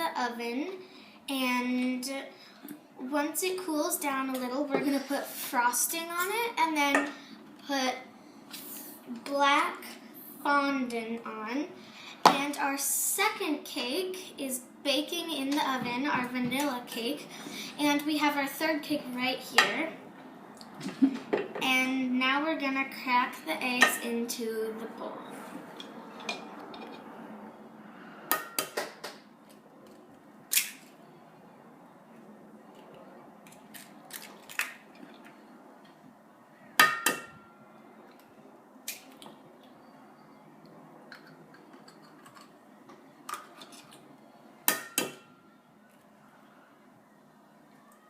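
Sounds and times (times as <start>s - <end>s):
sharp knocks on a bowl: 36.8s - 37.4s, 44.7s - 45.3s.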